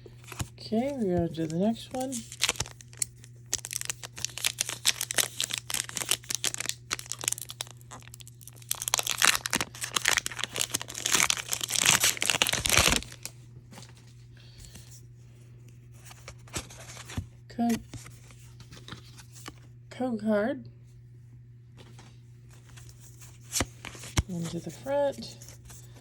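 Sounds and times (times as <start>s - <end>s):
foil wrapper crinkling: 0.2s - 13.9s.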